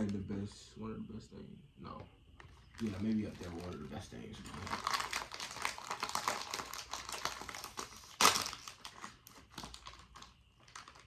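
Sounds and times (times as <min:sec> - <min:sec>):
plastic snack bag crinkling: 0:02.4 - 0:11.0.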